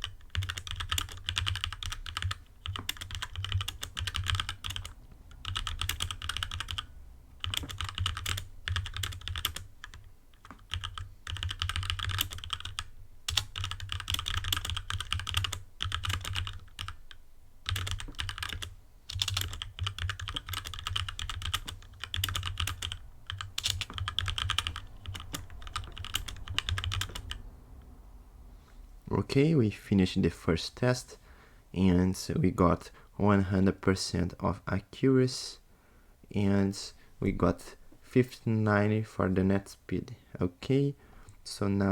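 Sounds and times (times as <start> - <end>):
mechanical keyboard typing: 0.0 - 27.4.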